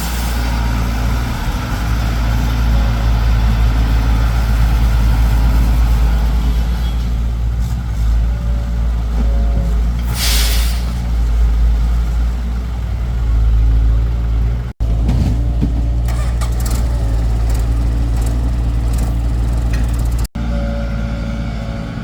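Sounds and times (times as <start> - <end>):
excavator diesel engine: 0.0 - 22.0.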